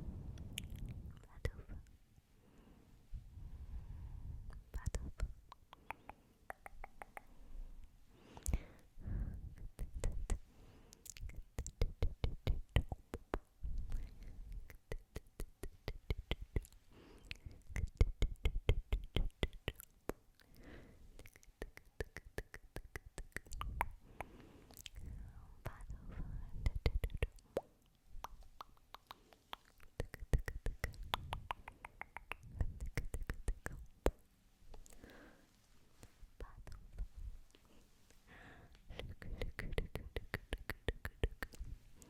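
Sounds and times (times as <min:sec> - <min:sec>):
person whispering: 0:00.5 - 0:02.0, 0:04.4 - 0:07.4, 0:08.3 - 0:20.2, 0:21.2 - 0:27.4, 0:36.0 - 0:37.8, 0:38.7 - 0:42.0
breathing: 0:02.4 - 0:04.5, 0:07.3 - 0:09.5, 0:10.4 - 0:11.0, 0:16.9 - 0:17.4, 0:20.5 - 0:21.1, 0:24.0 - 0:25.5, 0:35.0 - 0:35.6, 0:37.6 - 0:39.0.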